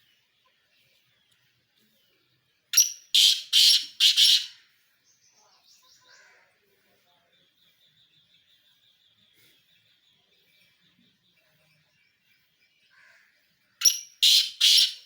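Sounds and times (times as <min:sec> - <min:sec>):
small birds chirping: 0:00.0 - 0:15.0
pheasant calling: 0:02.7 - 0:04.6, 0:13.8 - 0:15.0.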